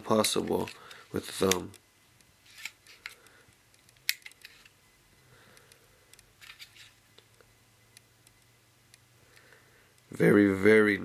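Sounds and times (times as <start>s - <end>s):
faint hum: 0.0s - 11.0s
pistol metallic clicks: 0.6s - 4.7s.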